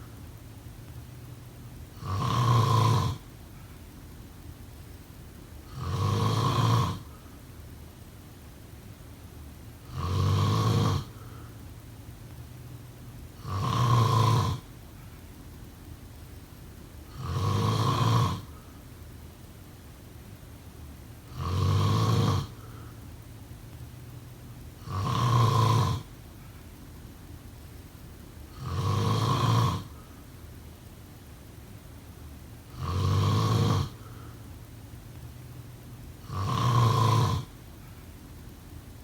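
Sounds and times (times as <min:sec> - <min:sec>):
person snoring: 0:02.0 - 0:03.3, 0:05.7 - 0:07.2, 0:09.8 - 0:11.4, 0:13.4 - 0:14.7, 0:17.1 - 0:18.6, 0:21.3 - 0:22.9, 0:24.8 - 0:26.1, 0:28.5 - 0:30.1, 0:32.7 - 0:34.4, 0:36.2 - 0:37.5.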